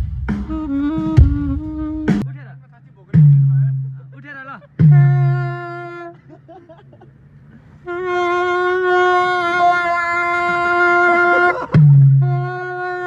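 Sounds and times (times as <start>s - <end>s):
wind instrument held notes: 0.3s - 2.3s, 4.8s - 6.2s, 7.5s - 13.0s.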